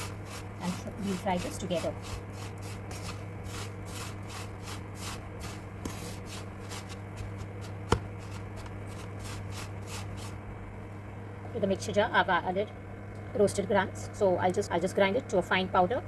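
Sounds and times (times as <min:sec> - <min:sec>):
spatula scraping sticky mixture in pan: 0:00.0 - 0:10.4.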